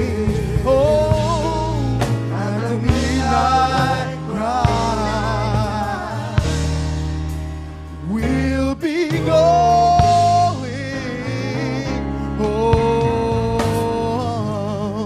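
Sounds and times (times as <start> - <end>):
person singing with vibrato: 0.0 - 6.9
gospel instrumental backing: 0.0 - 15.0.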